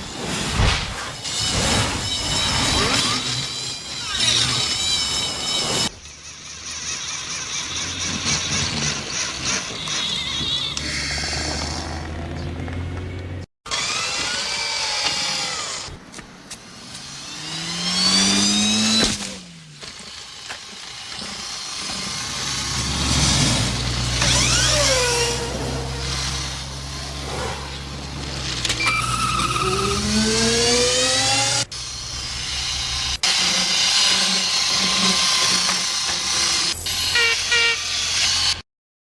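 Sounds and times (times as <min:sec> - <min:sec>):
toy car electric motor whine: 0:01.3 - 0:12.1, 0:13.7 - 0:16.0, 0:16.6 - 0:38.6.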